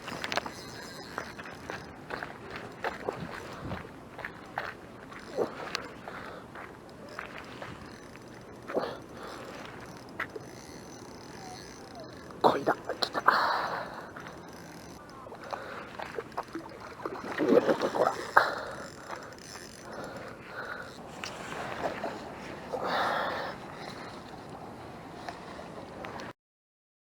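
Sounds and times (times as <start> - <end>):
water splashing and sloshing: 0.0 - 26.3.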